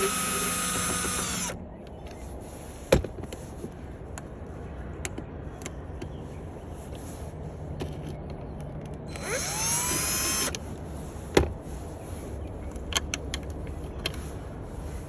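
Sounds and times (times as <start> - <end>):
power drill motor whine: 0.0 - 1.6, 9.1 - 10.6.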